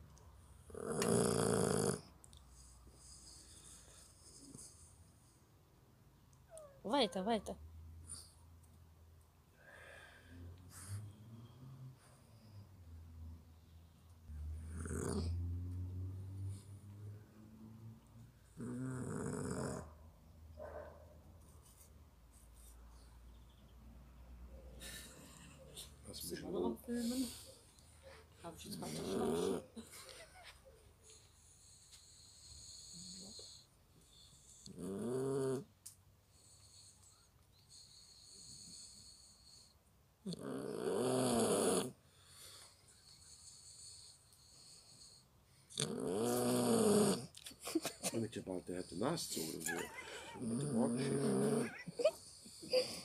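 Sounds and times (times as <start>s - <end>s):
puppy snoring: 0.5s - 5.0s, 14.3s - 17.2s, 18.4s - 20.0s, 28.6s - 29.8s, 31.2s - 47.4s, 48.6s - 53.0s
puppy breathing quietly: 2.4s - 5.7s, 9.6s - 13.4s, 26.8s - 29.5s, 36.2s - 40.0s, 41.9s - 45.8s.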